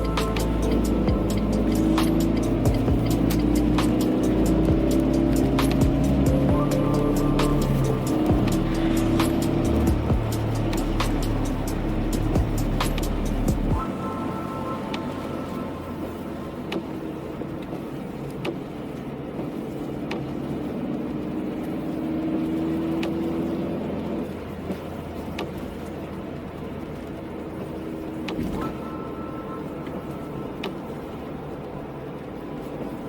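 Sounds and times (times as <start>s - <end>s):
car engine and road noise: 0.0s - 33.0s.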